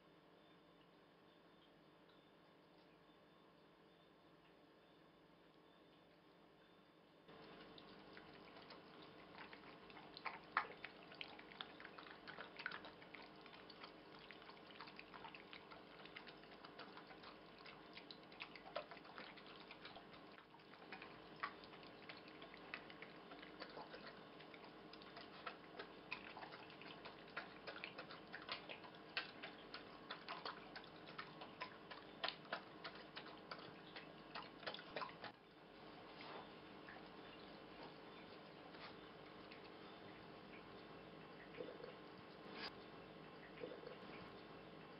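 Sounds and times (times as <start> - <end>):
dog eating from bowl: 7.3 - 35.4.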